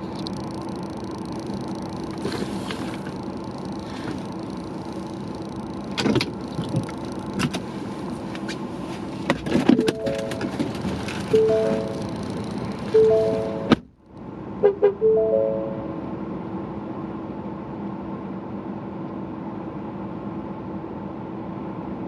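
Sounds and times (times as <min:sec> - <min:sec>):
car cabin road hum: 0:00.0 - 0:22.0
electronic chime tones: 0:09.8 - 0:10.5, 0:11.3 - 0:12.2, 0:12.9 - 0:13.7, 0:15.0 - 0:16.0.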